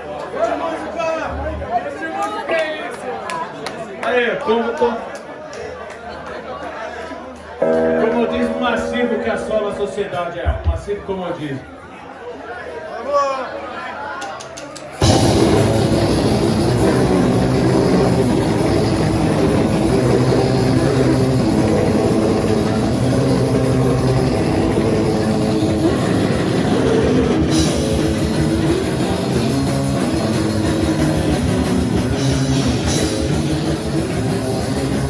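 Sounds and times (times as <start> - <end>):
live punk rock band: 15.0 - 35.0.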